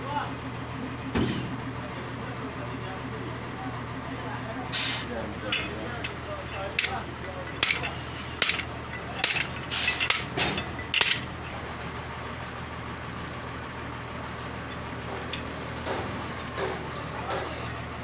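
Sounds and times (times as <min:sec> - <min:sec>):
steady low hum: 0:01.8 - 0:18.0
tools knocking on metal: 0:05.5 - 0:11.6, 0:15.0 - 0:17.6.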